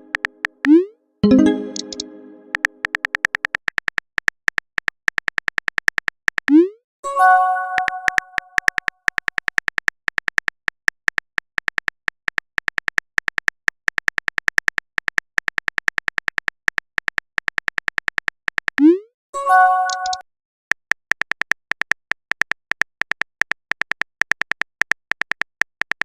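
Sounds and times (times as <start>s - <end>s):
phone keyboard typing clicks: 0.1s - 6.6s, 7.8s - 18.8s, 19.9s - 26.0s
bright chime: 1.2s - 2.5s.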